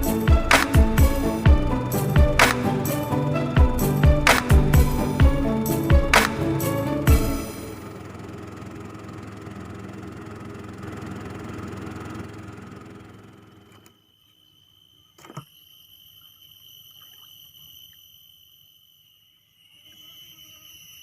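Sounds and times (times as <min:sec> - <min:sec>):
insects buzzing: 0:00.0 - 0:07.8, 0:12.5 - 0:21.0.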